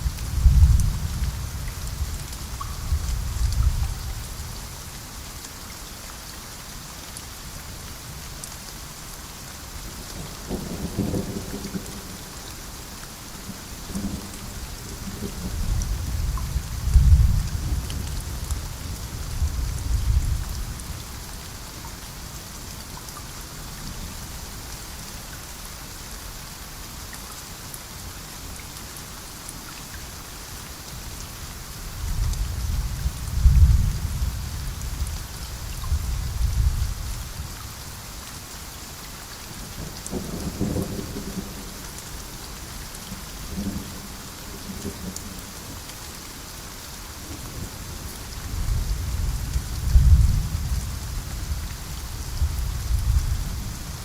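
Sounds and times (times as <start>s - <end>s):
heavy rain hiss: 0.0s - 54.0s
thunder rumbling: 48.4s - 51.6s.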